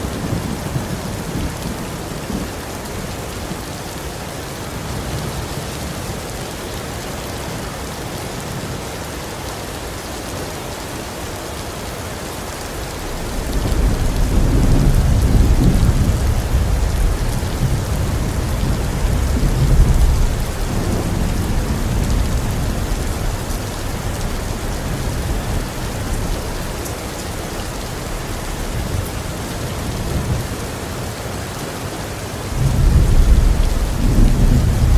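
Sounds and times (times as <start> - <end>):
heavy rain falling: 0.0 - 34.9
rolling thunder: 12.6 - 30.7, 32.5 - 34.9.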